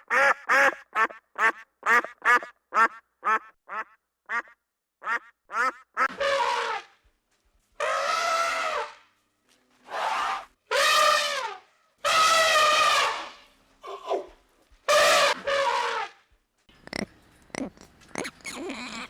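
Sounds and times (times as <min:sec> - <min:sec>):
animal calling: 0:16.8 - 0:19.0.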